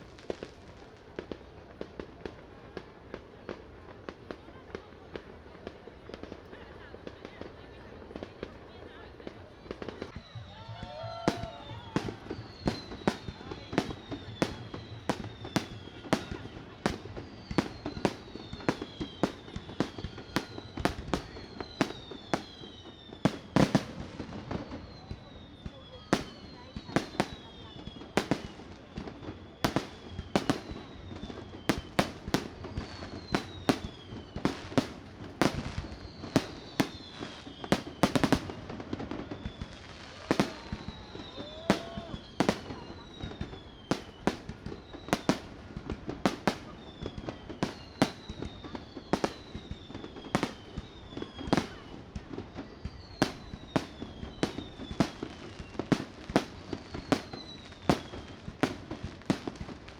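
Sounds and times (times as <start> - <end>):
falling firework whistles: 9.6 - 59.9
firework bangs echoing: 9.7 - 59.9.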